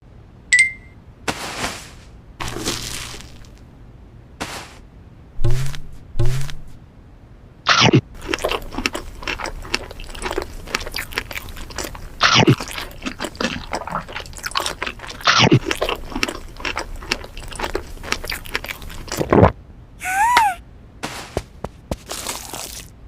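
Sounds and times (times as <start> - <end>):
duck eating crunchy food: 2.4 - 3.6, 7.7 - 19.5, 21.9 - 23.0.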